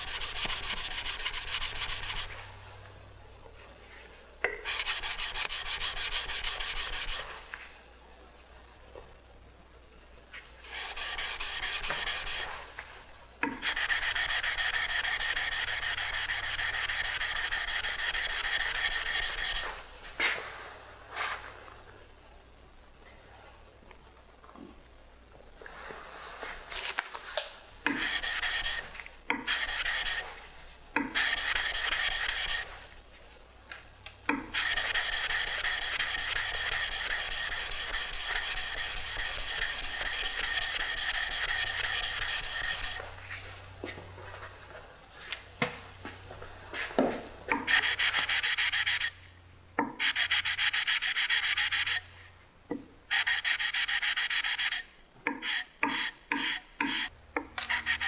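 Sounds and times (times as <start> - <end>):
knife being sanded: 0.0 - 2.3, 4.7 - 7.2, 10.7 - 12.5, 13.6 - 19.7, 28.0 - 30.4, 31.1 - 32.7, 34.5 - 43.0, 47.6 - 49.1, 50.0 - 52.0, 53.1 - 54.8, 55.4 - 57.1, 57.7 - 58.0.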